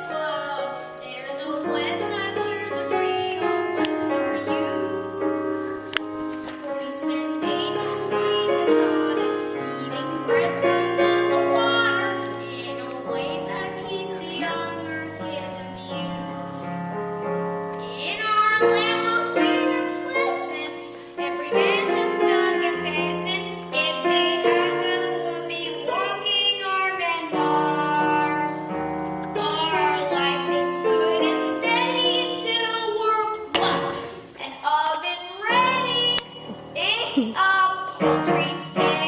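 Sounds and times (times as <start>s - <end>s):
voices singing: 0.0s - 16.7s, 35.4s - 39.0s
piano accompaniment: 0.0s - 39.0s.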